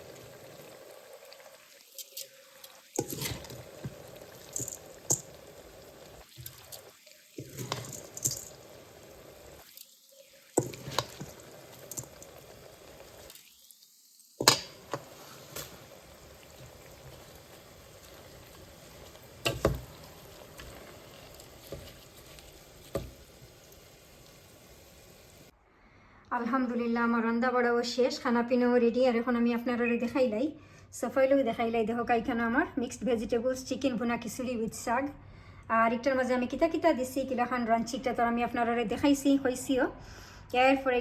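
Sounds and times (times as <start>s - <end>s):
food sizzling in a pot: 0.0s - 25.5s.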